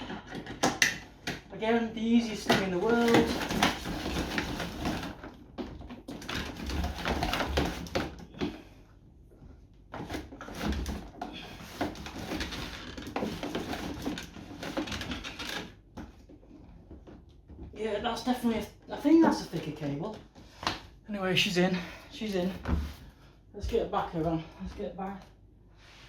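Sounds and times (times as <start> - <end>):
cable rustling and rubbing: 2.1 - 8.2, 9.3 - 18.4.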